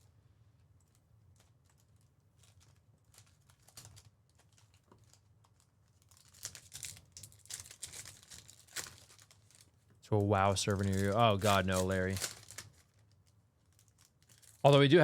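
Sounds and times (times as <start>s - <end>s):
wrappers crinkling: 0.9s - 15.0s
card packs torn open: 2.4s - 5.2s, 5.9s - 14.8s.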